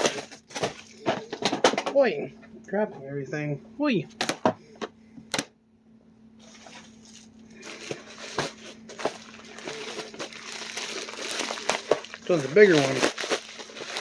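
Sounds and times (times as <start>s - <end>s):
package packaging crinkling: 0.0s - 1.5s, 6.4s - 14.0s.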